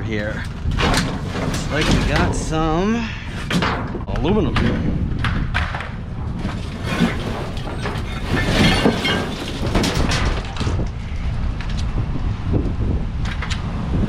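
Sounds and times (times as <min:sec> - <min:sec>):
low rumble: 0:00.0 - 0:14.0
knocks and clattering debris: 0:00.4 - 0:11.0.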